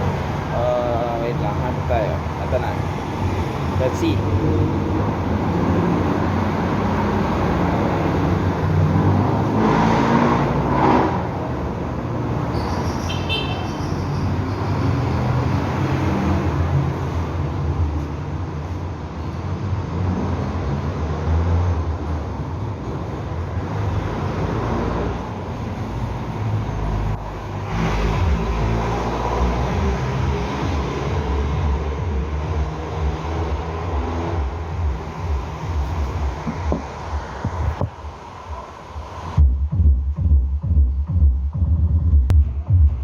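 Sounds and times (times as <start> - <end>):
deep bass music from subwoofer: 27.0 - 38.0, 39.0 - 43.0.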